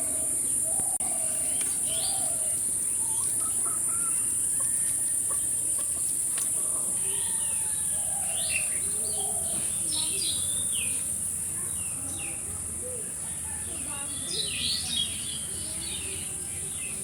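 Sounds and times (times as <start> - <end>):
birds calling: 0.0 - 17.0
chickens clucking: 2.9 - 7.8.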